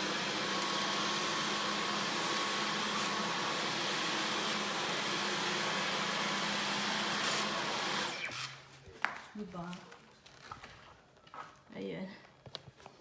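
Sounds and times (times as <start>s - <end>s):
vacuum cleaner on carpet: 0.0s - 8.4s.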